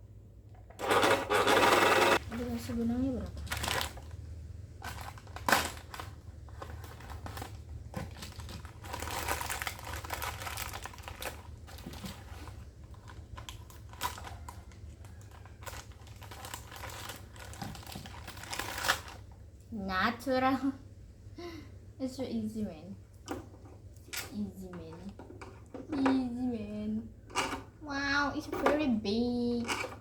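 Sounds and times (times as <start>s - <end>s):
packaging crinkling: 3.2s - 19.4s
parts clicking and knocking: 27.2s - 27.8s, 29.6s - 30.0s.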